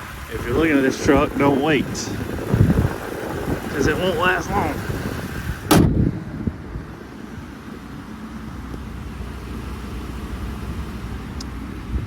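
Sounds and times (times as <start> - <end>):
steady low rumble: 0.0 - 12.0
short sharp knock: 5.7 - 5.9.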